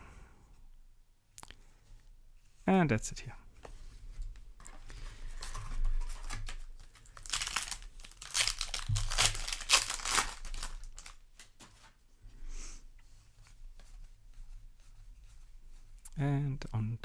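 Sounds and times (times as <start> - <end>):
foil wrapper tearing and crinkling: 5.4 - 11.9.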